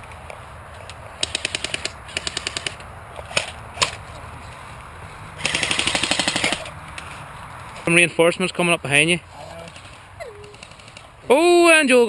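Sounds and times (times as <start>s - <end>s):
airsoft guns firing: 5.4s - 6.7s.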